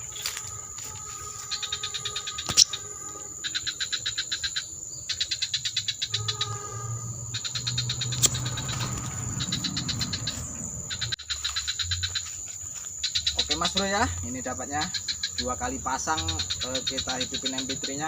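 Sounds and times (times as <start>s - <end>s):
high-pitched whine: 0.0s - 4.0s
insects chirring: 0.0s - 18.0s
sharp clicks: 7.9s - 9.1s.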